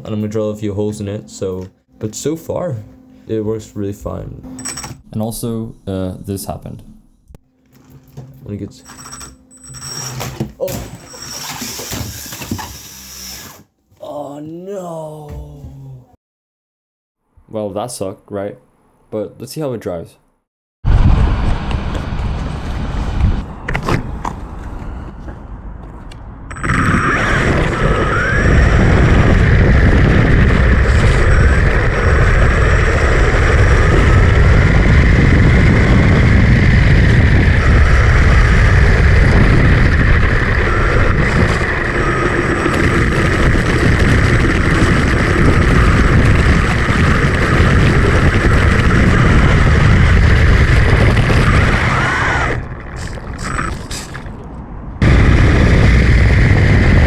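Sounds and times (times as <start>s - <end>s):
rc car rumbling and whining: 8.8s - 13.6s, 26.5s - 53.7s.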